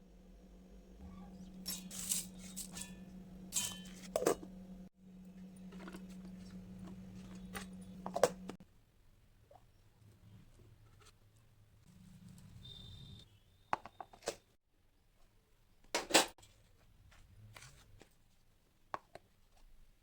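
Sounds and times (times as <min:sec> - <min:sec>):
steady low hum: 0:00.0 - 0:08.6.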